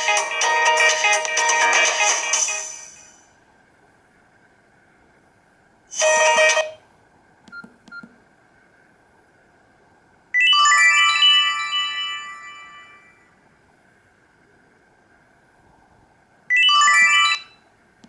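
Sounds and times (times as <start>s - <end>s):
multi-note ringtone chime: 10.4s - 13.2s, 16.5s - 17.6s
phone ringtone chime: 10.4s - 13.3s, 16.5s - 17.6s.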